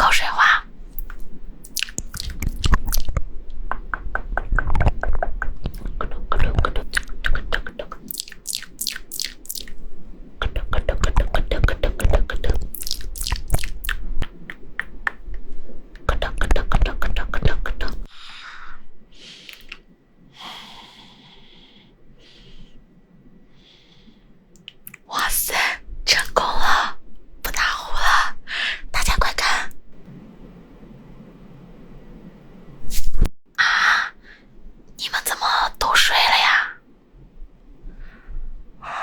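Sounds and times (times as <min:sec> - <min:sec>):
crisp clicks and taps: 0:01.0 - 0:07.8.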